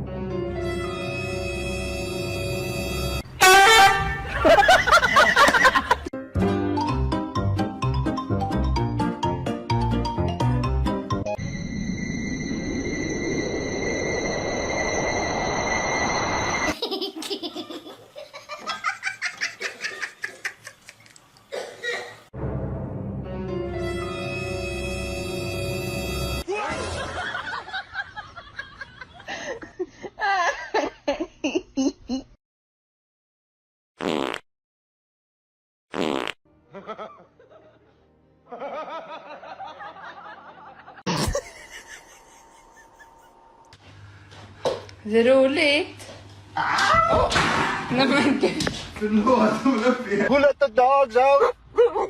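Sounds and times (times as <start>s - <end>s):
laughter: 4.2s - 6.1s, 16.7s - 21.1s, 26.5s - 32.3s, 36.7s - 43.4s, 48.0s - 48.8s, 49.4s - 50.3s, 51.4s - 52.0s
loud noise with high tones: 11.4s - 16.8s
music bursts: 22.4s - 26.5s
high-pitched laughter: 41.1s - 43.5s.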